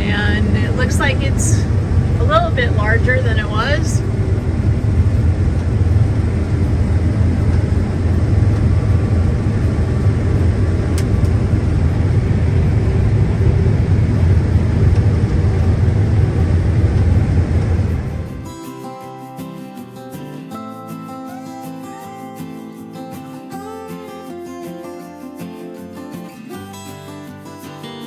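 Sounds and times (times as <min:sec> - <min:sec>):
vehicle rumbling over rough ground: 0:00.0 - 0:18.6
acoustic guitar music: 0:00.0 - 0:28.0.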